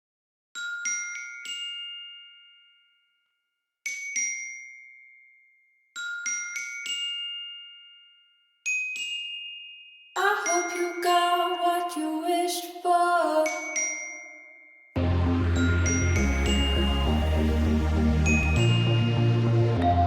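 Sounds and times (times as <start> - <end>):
bell-like chime melody: 0.6 - 11.8, 13.3 - 20.0
fuller music with lower instruments: 15.0 - 20.0.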